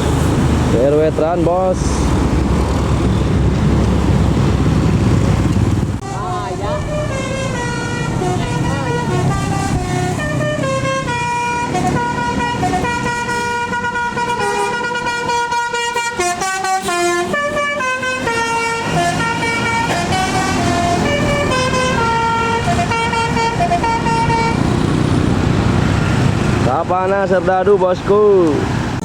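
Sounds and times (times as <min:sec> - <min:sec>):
bus engine running: 0:00.0 - 0:29.0
air horn playing a tune: 0:06.0 - 0:24.6.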